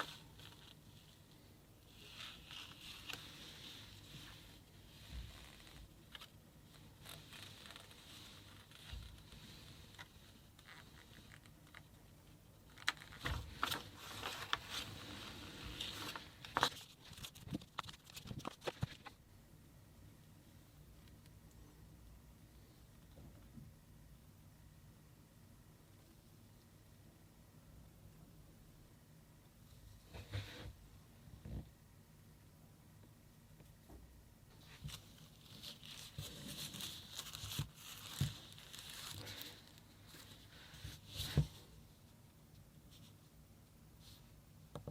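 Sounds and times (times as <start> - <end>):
packaging crinkling and rustling: 12.7 - 19.2, 34.6 - 41.4.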